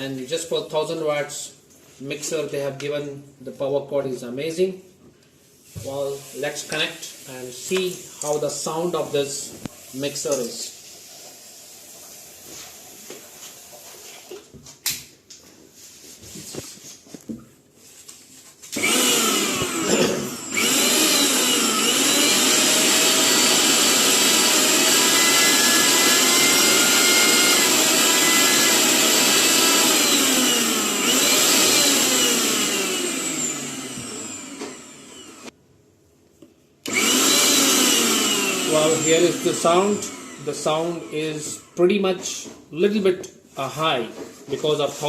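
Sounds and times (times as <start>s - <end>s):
mixer grinder motor whine: 18.7s - 35.6s, 36.8s - 42.2s.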